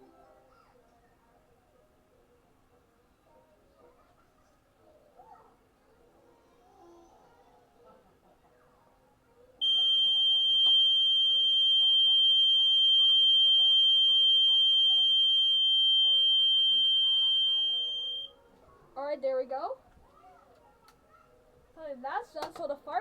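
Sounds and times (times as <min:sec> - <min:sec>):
high-pitched alarm tone: 0:09.6 - 0:18.3.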